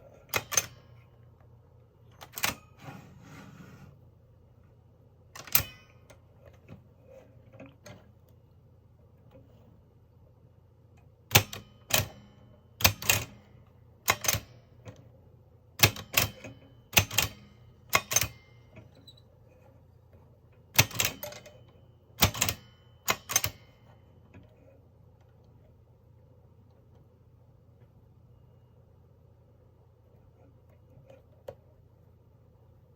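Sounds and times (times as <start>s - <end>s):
typewriter clacking: 15.8s - 17.4s.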